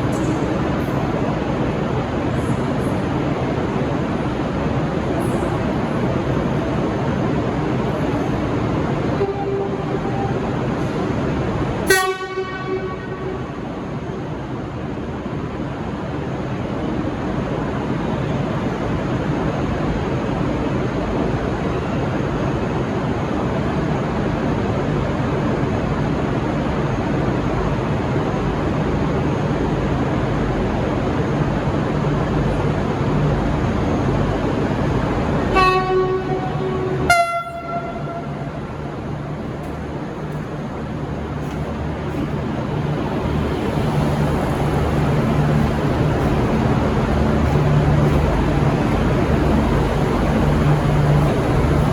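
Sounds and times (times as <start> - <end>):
diesel train running past: 0.0 - 51.9
two-tone train horn: 9.1 - 11.0, 11.8 - 13.8, 35.5 - 39.8, 44.9 - 51.9.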